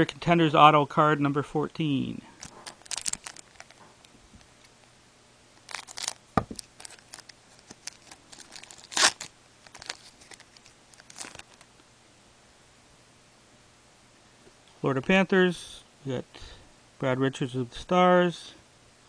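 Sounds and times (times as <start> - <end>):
foil wrapper tearing and crinkling: 2.4 - 3.8, 5.6 - 11.7.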